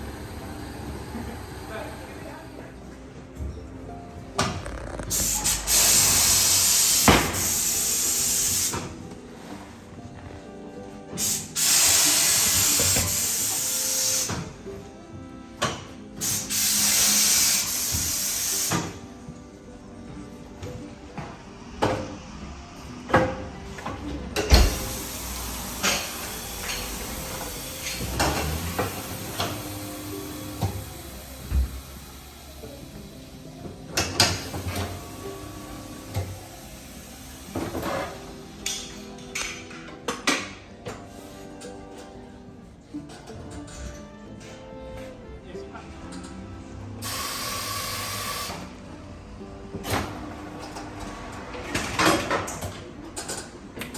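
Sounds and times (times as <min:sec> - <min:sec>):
compressed air hissing: 0:05.1 - 0:09.1, 0:11.1 - 0:14.7, 0:16.1 - 0:19.1, 0:24.5 - 0:39.1, 0:47.0 - 0:48.6
tyre-fitting tools clanking: 0:23.1 - 0:31.0, 0:37.5 - 0:42.2.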